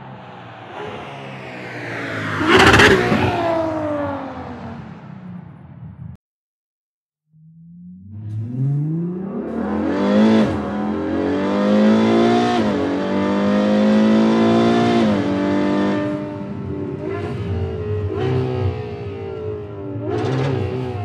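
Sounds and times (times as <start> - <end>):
car engine accelerating: 0.0 - 6.1, 7.4 - 21.0.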